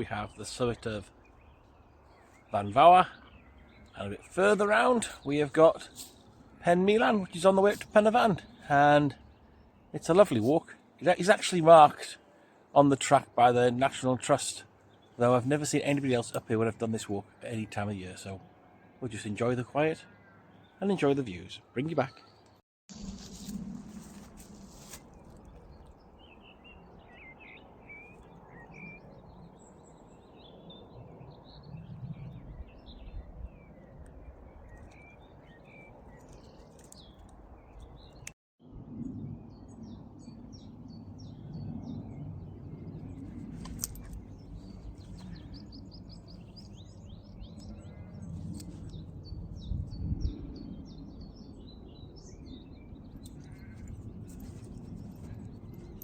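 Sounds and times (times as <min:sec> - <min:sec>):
small birds chirping: 0:00.0 - 0:13.1, 0:23.5 - 0:38.4, 0:39.6 - 0:56.0.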